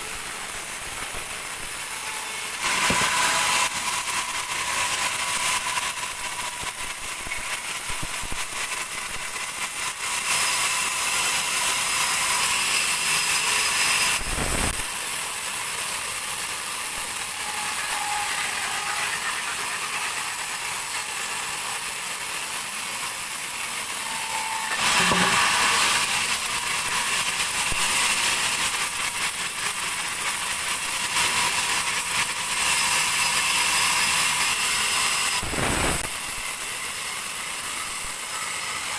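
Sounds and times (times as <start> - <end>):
bandsaw cutting log: 0.0 - 38.9.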